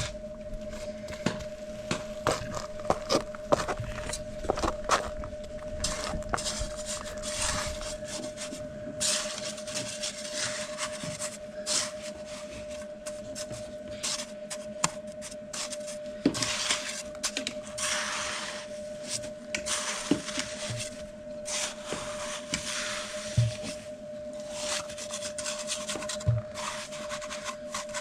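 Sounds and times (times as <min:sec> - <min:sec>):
faint steady hum: 0:00.0 - 0:28.0
scraping and rubbing: 0:00.0 - 0:28.0.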